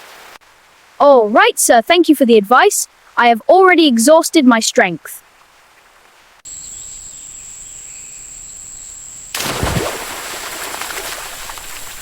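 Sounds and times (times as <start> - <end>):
crickets chirping: 6.4 - 12.0.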